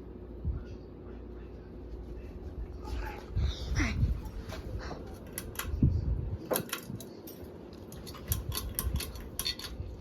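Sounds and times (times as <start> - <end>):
clicks and clinks of small objects: 6.5 - 9.8.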